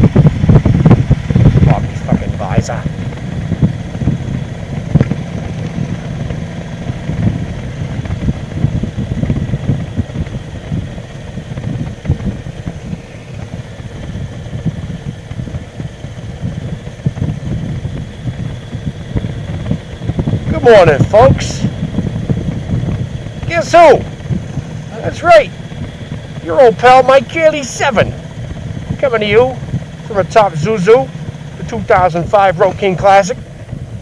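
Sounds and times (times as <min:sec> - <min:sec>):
motorcycle engine rumbling: 0:00.0 - 0:34.0.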